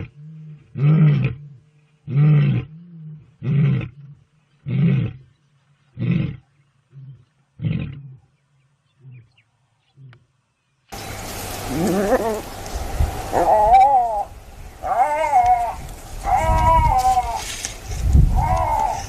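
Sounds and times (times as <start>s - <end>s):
big cat roaring: 0.0s - 5.3s, 11.7s - 12.4s, 13.3s - 17.5s, 18.3s - 19.0s.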